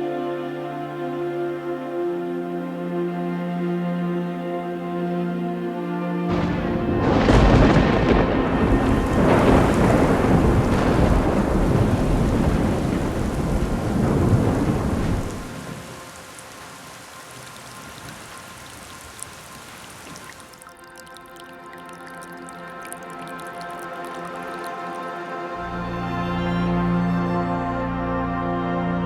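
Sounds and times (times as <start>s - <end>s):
thunder rumbling: 6.3s - 19.9s
heavy rain: 6.3s - 20.6s.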